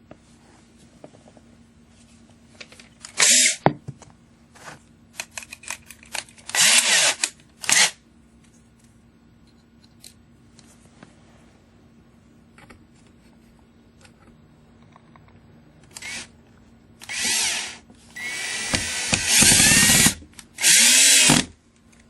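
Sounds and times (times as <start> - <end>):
cordless drill driving a screw: 3.2 - 3.6, 6.5 - 8.0, 15.9 - 16.3, 17.0 - 21.5.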